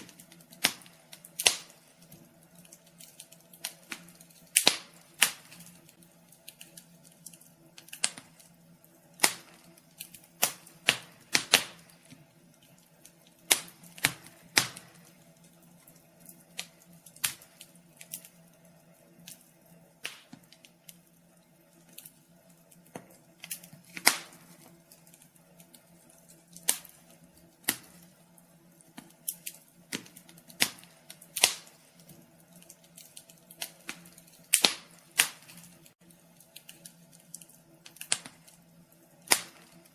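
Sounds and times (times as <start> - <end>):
faint steady hum: 0.0 - 39.9
wood fire crackling: 0.0 - 39.9.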